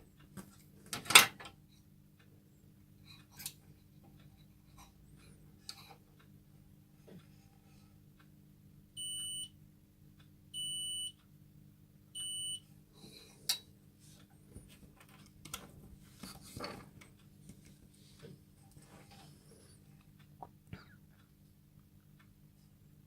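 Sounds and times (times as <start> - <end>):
faint clicks and handling knocks: 13.4 - 20.2.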